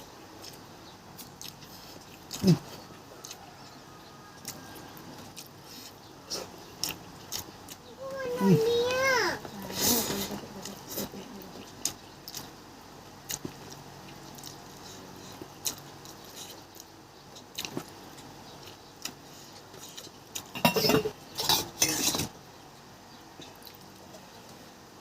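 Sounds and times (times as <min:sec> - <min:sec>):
dishes and utensils clinking: 0:20.4 - 0:22.3
dishes clattering: 0:20.5 - 0:22.3.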